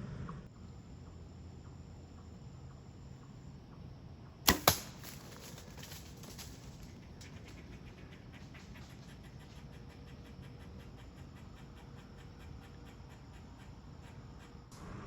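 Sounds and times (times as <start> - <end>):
quick even ticking: 4.5 - 14.7.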